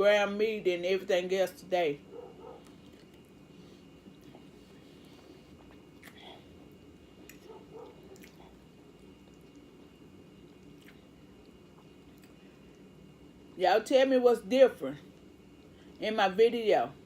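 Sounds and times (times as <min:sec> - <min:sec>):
faint chewing: 0:02.1 - 0:12.9.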